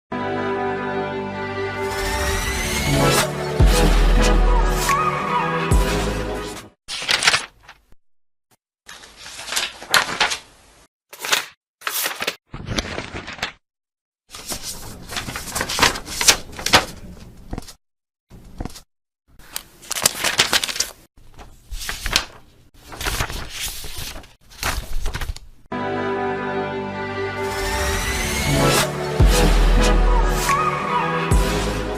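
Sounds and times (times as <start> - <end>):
paper pages flipping: 6.9 - 8.0, 8.9 - 13.6, 14.3 - 25.6.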